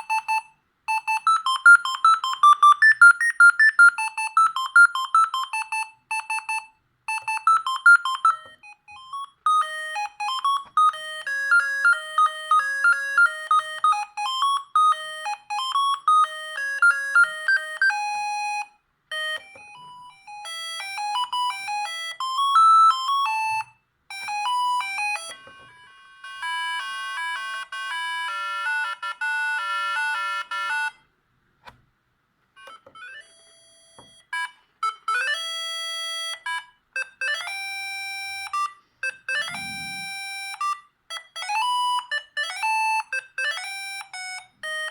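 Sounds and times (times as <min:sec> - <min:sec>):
electronic ringtone melodies: 0:00.0 - 0:31.0, 0:32.6 - 0:44.9.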